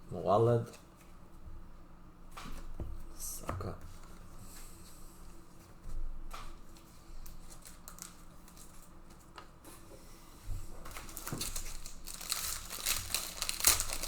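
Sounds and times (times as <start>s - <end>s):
foil packs crinkling: 6.8s - 9.4s, 10.8s - 14.0s.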